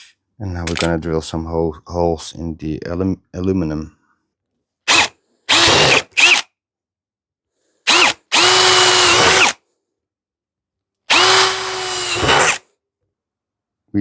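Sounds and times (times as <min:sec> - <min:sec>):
electric drill drilling aluminium: 0:04.9 - 0:06.5, 0:07.9 - 0:09.6, 0:11.1 - 0:12.6.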